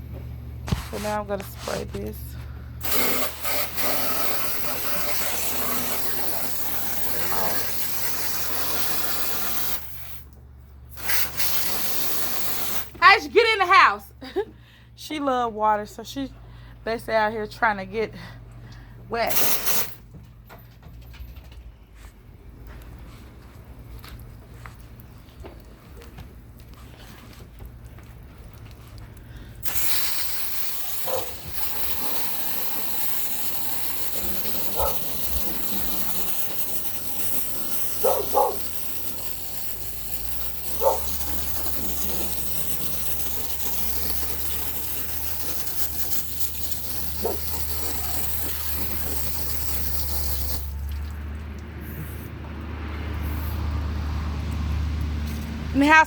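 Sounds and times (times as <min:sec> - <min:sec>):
hose spraying water: 0:00.7 - 0:02.2, 0:02.8 - 0:14.0, 0:19.2 - 0:20.0, 0:29.5 - 0:56.0.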